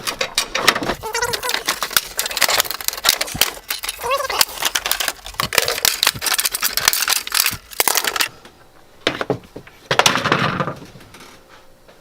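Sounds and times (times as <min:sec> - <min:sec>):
small metal parts rattling: 0:00.0 - 0:08.3.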